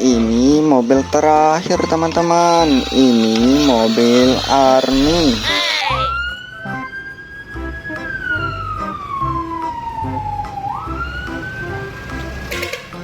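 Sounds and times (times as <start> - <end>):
siren wailing: 0.0 - 12.2
background music: 0.0 - 13.0.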